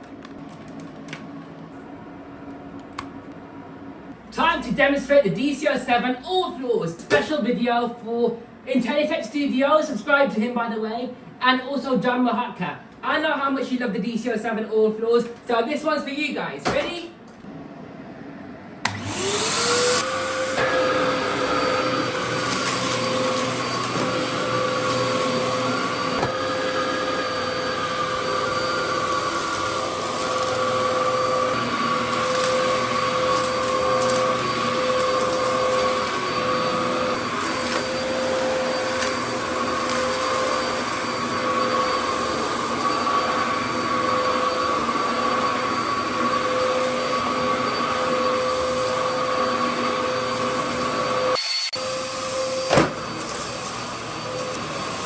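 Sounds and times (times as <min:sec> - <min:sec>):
vacuum cleaner motor whine: 0:17.5 - 0:55.0
vacuum cleaner switch click: 0:18.8 - 0:19.1.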